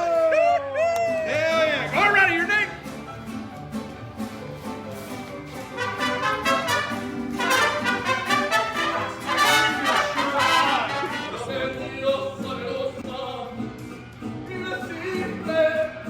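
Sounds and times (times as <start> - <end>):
brass background music: 5.0 - 11.9.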